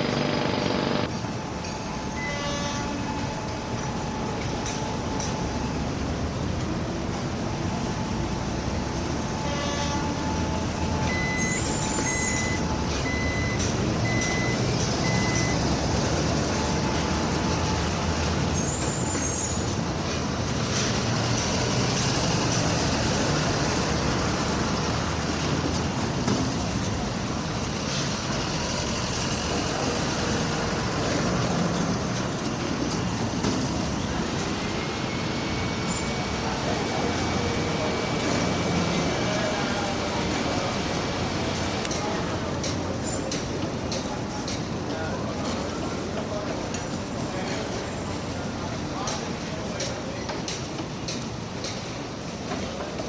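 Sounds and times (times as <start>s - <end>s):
heavy machinery and trucks running: 0.0s - 53.0s
reversing alarm beeping: 1.5s - 5.9s, 8.2s - 19.9s.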